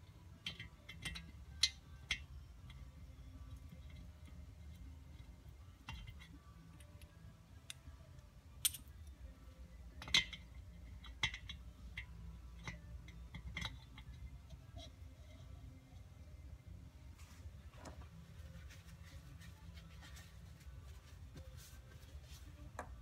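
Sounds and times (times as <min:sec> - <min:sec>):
steady low hum: 0:00.0 - 0:23.0
metal parts clicking and clinking: 0:08.6 - 0:09.1.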